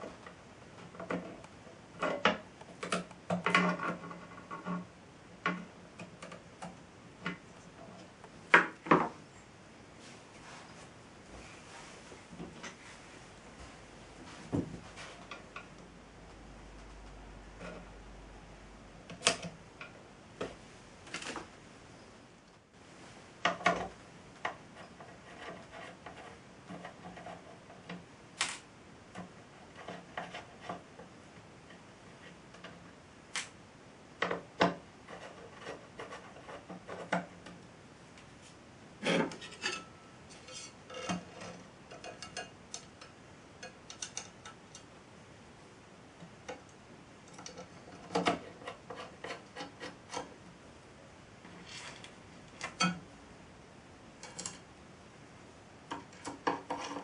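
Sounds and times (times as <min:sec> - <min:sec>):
scraping and rubbing: 0:03.5 - 0:04.9, 0:24.7 - 0:27.9, 0:35.0 - 0:37.3, 0:47.5 - 0:50.3, 0:51.4 - 0:52.2, 0:56.2 - 0:57.0.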